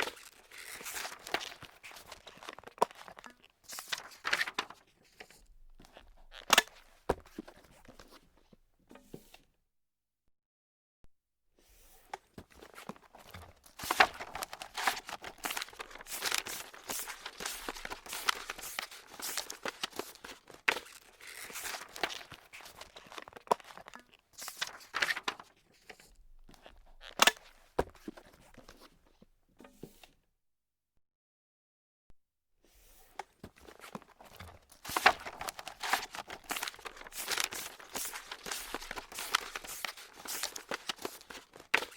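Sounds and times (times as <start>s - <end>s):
paper being crumpled: 0.0s - 4.8s, 12.6s - 25.5s, 33.6s - 41.9s.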